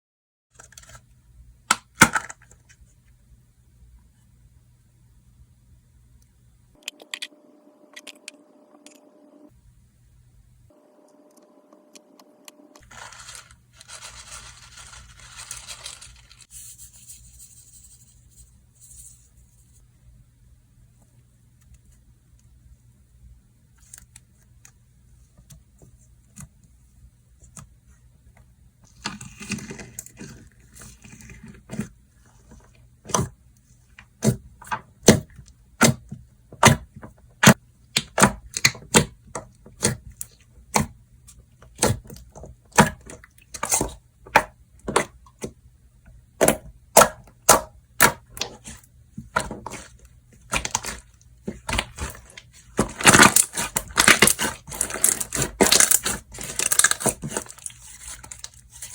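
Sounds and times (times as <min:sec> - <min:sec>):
soft crinkly rustle: 0:12.8 - 0:16.5.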